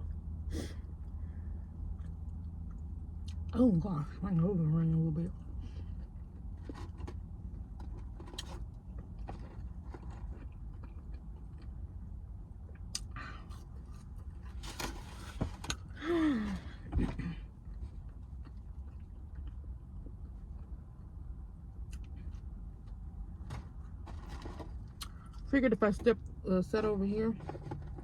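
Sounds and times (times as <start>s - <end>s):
steady low hum: 0.0s - 28.0s
person chewing: 1.9s - 3.4s, 8.2s - 11.9s, 24.8s - 25.4s.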